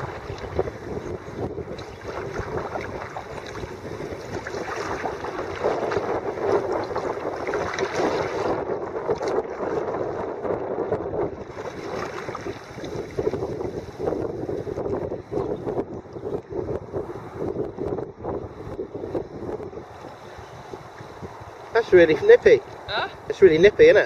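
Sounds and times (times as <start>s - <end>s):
water splashing against kayak: 0.0s - 16.9s
wind buffeting microphone: 0.0s - 24.0s.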